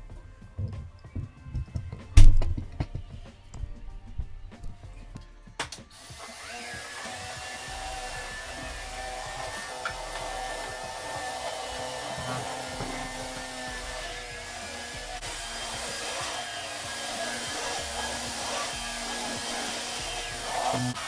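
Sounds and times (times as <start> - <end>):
soft music: 0.0 - 21.0
small electric motor whirring: 6.0 - 21.0.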